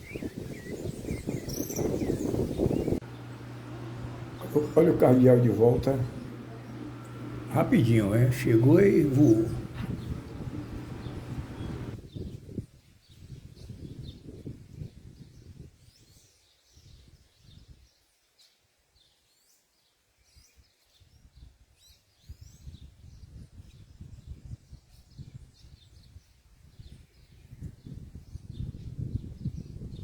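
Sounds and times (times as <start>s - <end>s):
small birds chirping: 0.0s - 12.2s.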